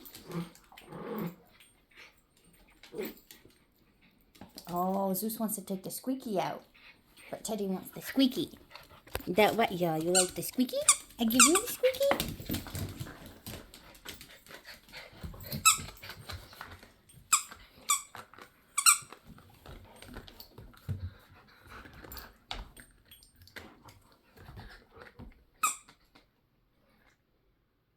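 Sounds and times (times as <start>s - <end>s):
squeaky dog toy squeaking: 10.1s - 12.2s, 18.8s - 19.1s, 25.6s - 25.9s.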